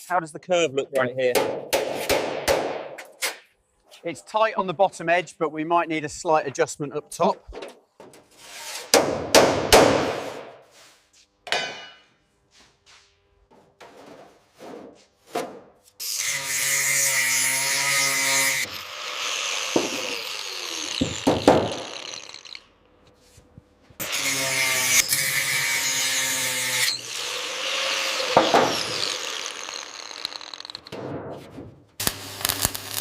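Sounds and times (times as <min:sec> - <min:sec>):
power tool running: 0:16.0 - 0:22.7, 0:24.0 - 0:31.0, 0:32.0 - 0:33.0
power tool winding down whine: 0:18.5 - 0:22.6, 0:26.9 - 0:30.9
sharp knocks: 0:21.0 - 0:21.9.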